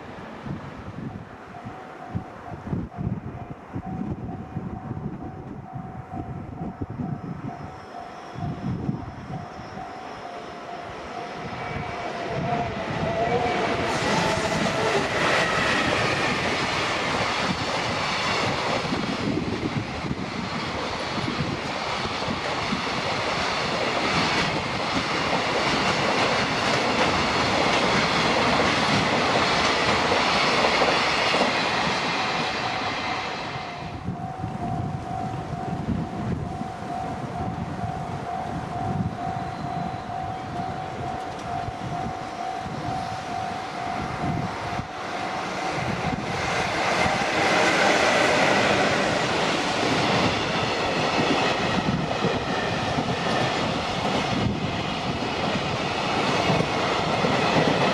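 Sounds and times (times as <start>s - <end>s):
freight train passing at speed: 0.0s - 57.9s
level crossing warning alarm: 1.1s - 17.6s, 32.6s - 49.1s.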